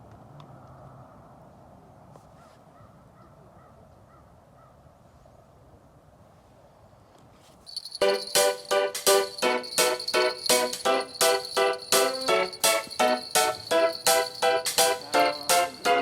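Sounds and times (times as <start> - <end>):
music with a beat: 8.0 - 16.0.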